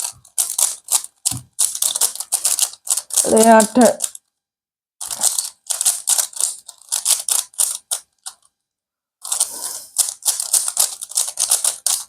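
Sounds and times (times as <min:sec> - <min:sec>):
puzzle cube layers clicking: 0:00.0 - 0:04.2, 0:09.2 - 0:12.0.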